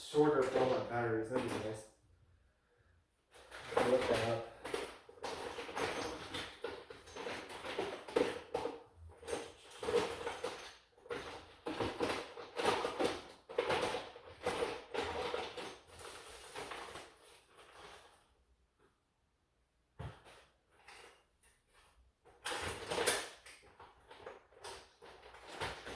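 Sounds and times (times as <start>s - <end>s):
small hard objects rattling: 3.4s - 18.2s.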